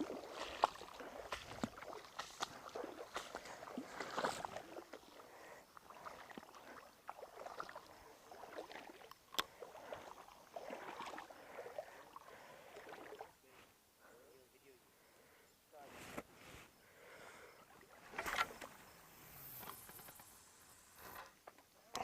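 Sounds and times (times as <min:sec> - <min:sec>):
water splashing and sloshing: 0:00.0 - 0:13.5, 0:17.0 - 0:20.3.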